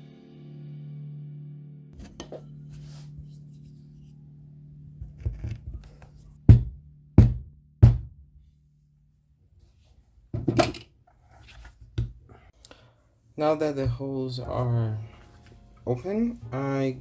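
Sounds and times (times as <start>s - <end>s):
soft background music: 0.0s - 8.0s, 13.4s - 17.0s
hard knocks of hole punching: 6.5s - 8.1s.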